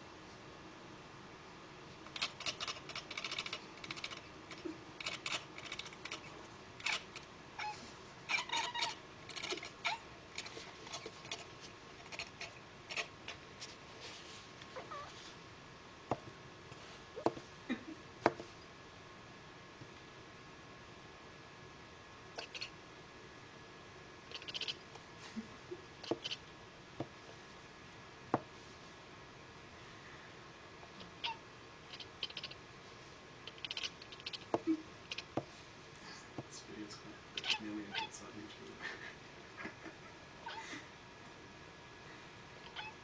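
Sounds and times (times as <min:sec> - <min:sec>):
cat chirping and chattering: 0:02.0 - 0:13.6, 0:14.8 - 0:15.2, 0:22.4 - 0:22.8, 0:24.3 - 0:25.0, 0:26.0 - 0:26.5, 0:31.0 - 0:32.6, 0:33.4 - 0:35.4, 0:37.3 - 0:38.2, 0:42.6 - 0:43.0.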